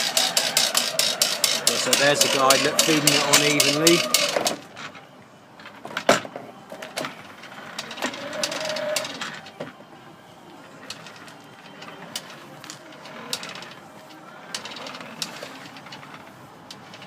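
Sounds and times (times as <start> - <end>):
hose reel clicks and knocks: 0.0 - 4.7, 10.8 - 13.8, 14.5 - 17.0
hose dragging: 0.0 - 4.9, 7.1 - 9.5, 10.6 - 17.0.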